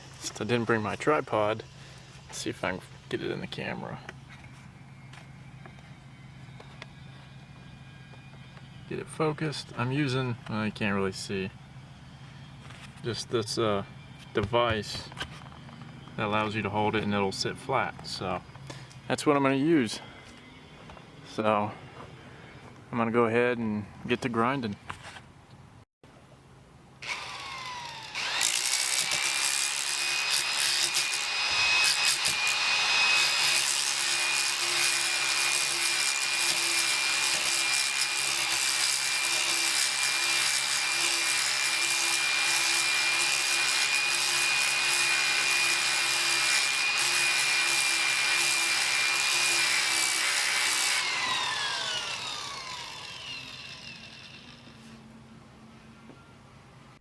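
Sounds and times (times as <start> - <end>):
grinder grinding fiberglass: 27.0 - 55.0.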